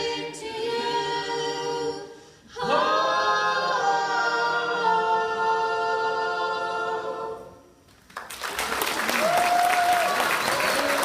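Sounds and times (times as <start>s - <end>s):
choir singing a cappella: 0.0s - 7.9s.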